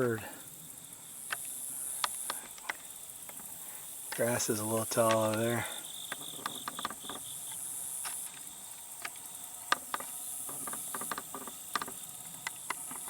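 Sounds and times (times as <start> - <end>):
insects buzzing: 0.0 - 13.0
sharp clicks: 4.1 - 13.0.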